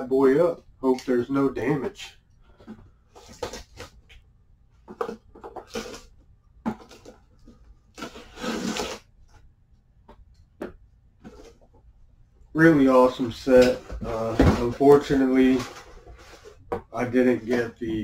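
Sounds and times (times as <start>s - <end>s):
cardboard scraping: 4.9s - 6.1s, 6.7s - 9.4s, 13.6s - 18.0s
box packaging knocks and rustles: 13.7s - 15.6s.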